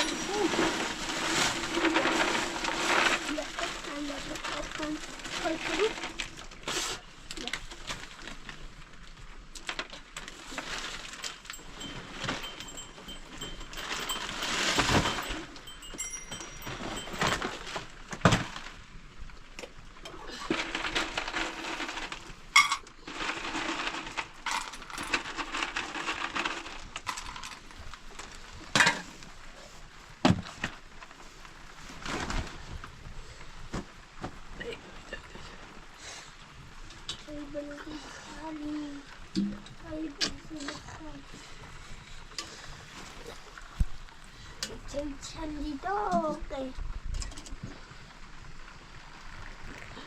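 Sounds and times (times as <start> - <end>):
knocks and clinks: 0.0 - 1.0, 11.2 - 17.8.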